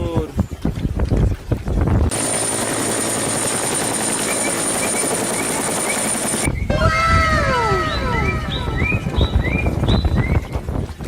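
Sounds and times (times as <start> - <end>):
helicopter rotor and engine whine: 2.1 - 6.9.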